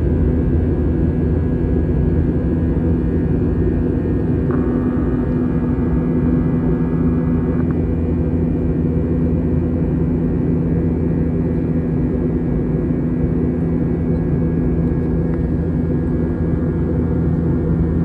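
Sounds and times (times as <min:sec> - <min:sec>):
jet engine cabin drone: 0:00.0 - 0:18.0
rushing air noise: 0:04.2 - 0:07.8.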